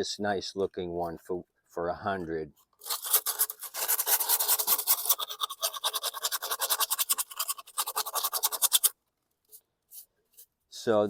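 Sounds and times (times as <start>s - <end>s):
sandpaper scratching on metal: 2.8s - 8.9s.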